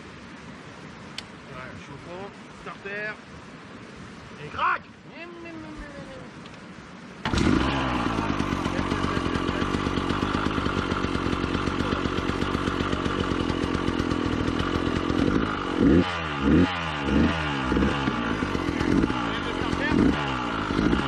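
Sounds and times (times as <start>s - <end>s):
motorcycle engine revving: 7.2s - 21.0s
motorcycle engine running: 7.2s - 21.0s.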